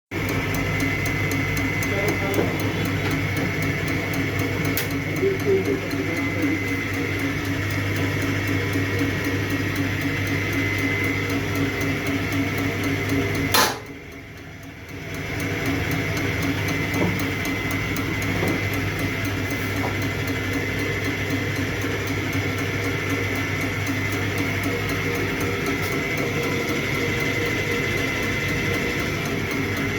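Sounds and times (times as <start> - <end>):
machine hum with fast ticking: 0.1 - 29.9
sharp click: 4.7 - 5.0, 13.5 - 13.9.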